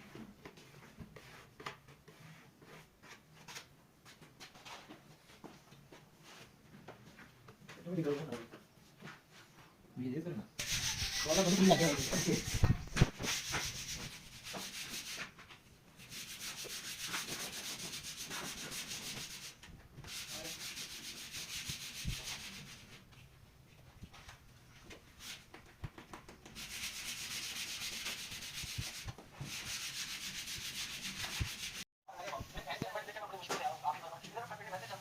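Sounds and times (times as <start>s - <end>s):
wood being sanded: 10.6s - 15.2s, 16.0s - 19.5s, 20.1s - 22.8s, 26.6s - 31.8s.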